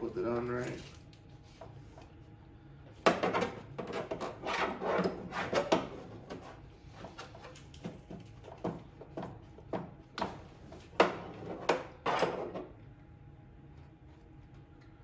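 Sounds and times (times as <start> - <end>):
tools rubbing and scraping: 3.7 - 8.1.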